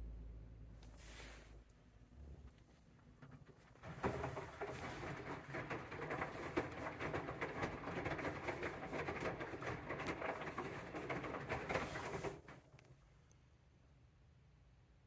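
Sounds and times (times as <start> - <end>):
washing machine motor hum: 2.2 - 12.8
wet laundry sloshing in drum: 3.2 - 12.6.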